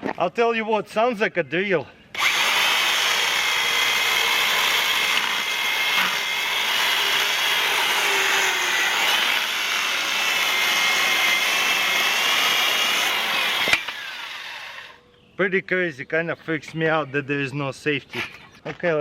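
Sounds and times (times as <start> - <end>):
electric chainsaw cutting log: 2.2 - 15.0.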